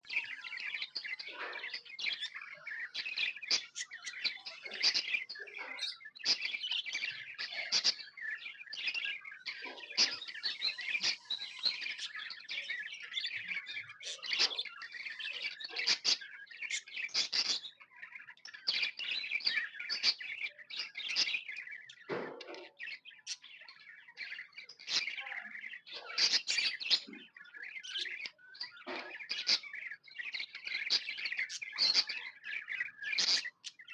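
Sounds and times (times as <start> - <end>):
budgerigars chirping and chattering: 0.0 - 33.9.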